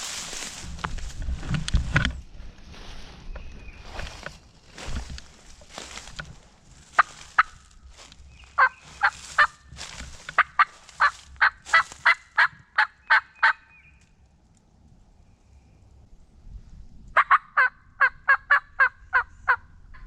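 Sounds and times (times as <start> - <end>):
turkey yelping: 6.9 - 7.6, 8.4 - 13.9, 17.2 - 20.0.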